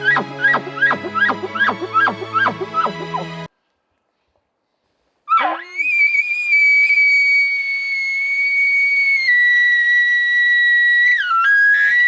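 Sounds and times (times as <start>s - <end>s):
elk bugling whistle: 0.0s - 3.4s, 5.3s - 12.0s.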